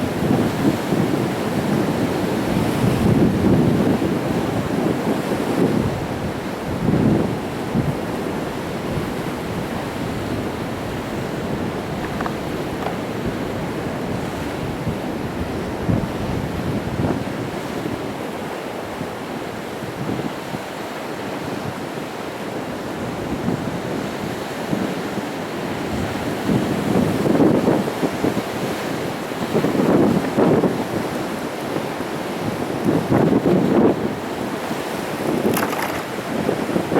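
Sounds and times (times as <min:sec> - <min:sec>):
waves washing against rocks: 0:00.0 - 0:16.4, 0:25.7 - 0:36.9
wind buffeting microphone: 0:00.0 - 0:18.2, 0:23.0 - 0:36.9.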